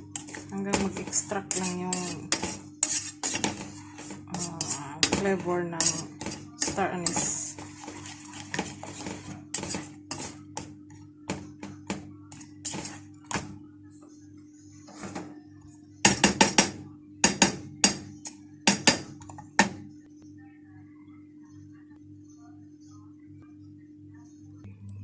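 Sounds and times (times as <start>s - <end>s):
steady low hum: 0.0s - 25.0s
utensils knocking cookware: 0.2s - 7.6s.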